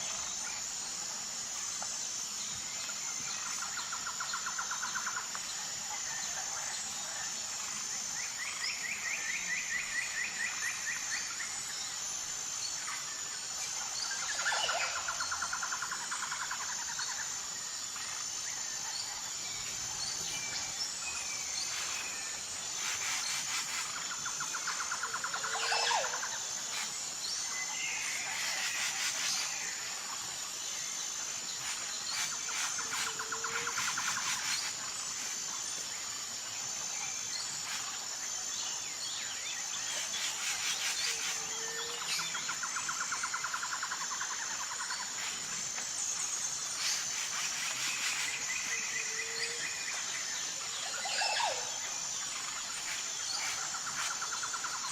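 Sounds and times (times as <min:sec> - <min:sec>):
insects trilling: 0:00.0 - 0:54.9.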